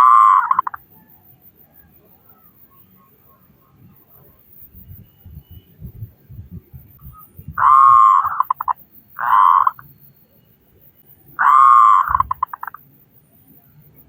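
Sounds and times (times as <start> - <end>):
dove cooing: 0.0 - 0.8, 7.1 - 9.8, 11.4 - 12.8.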